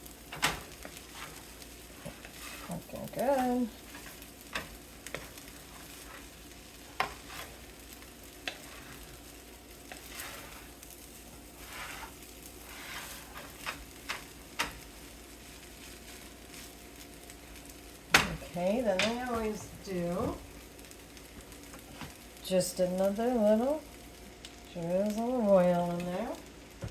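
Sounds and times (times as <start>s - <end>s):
rice sizzling in a pan: 0.0s - 26.9s
utensil scraping against pan: 0.3s - 15.1s.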